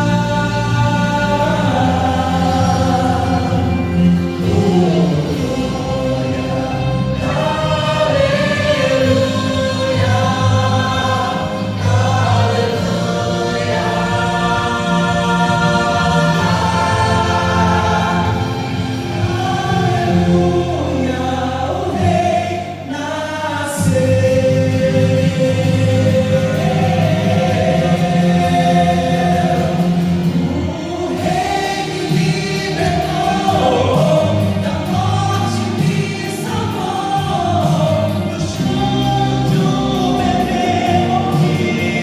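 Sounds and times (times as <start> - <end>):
vocal group singing gospel: 0.0 - 42.0.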